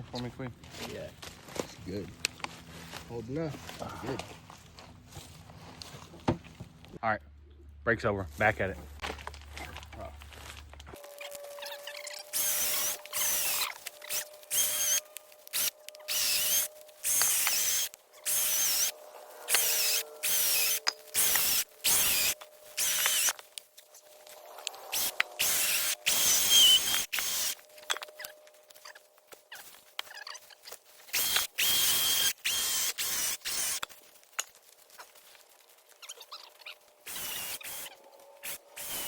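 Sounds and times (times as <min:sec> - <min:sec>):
power saw cutting wood: 0:11.0 - 0:23.5, 0:24.2 - 0:28.3, 0:31.1 - 0:33.9, 0:37.0 - 0:39.0.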